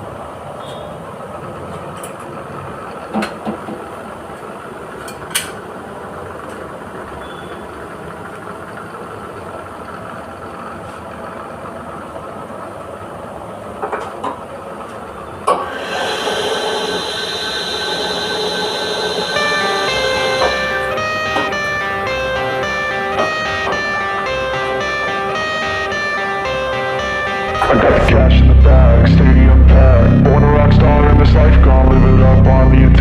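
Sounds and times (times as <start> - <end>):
machine humming: 15.5 - 33.0.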